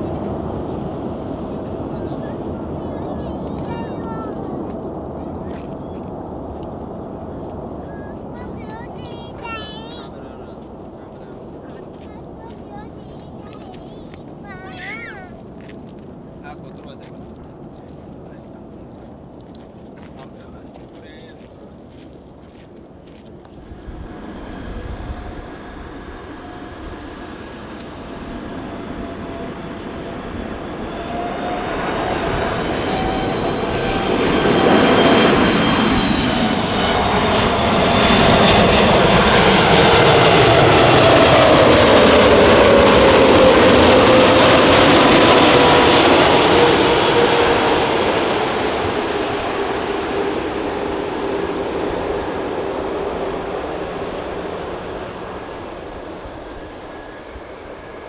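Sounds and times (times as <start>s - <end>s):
jet aircraft passing overhead: 0.0s - 58.0s.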